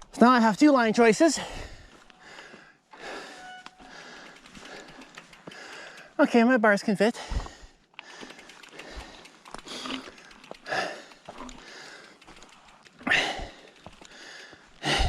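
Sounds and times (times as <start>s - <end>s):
person breathing hard: 1.4s - 6.2s, 7.2s - 15.0s
faint scattered ticks: 3.0s - 6.3s, 8.0s - 14.6s.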